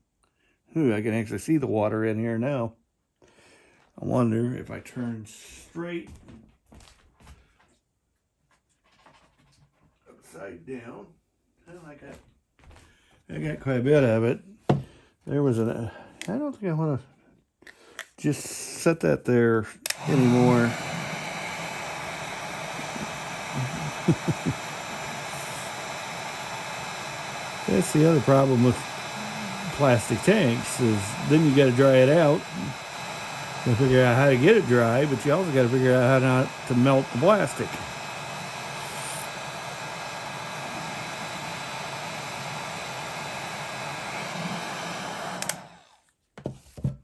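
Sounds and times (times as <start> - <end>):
steady hiss: 19.9 - 45.8
hot-air blower running: 19.9 - 46.0.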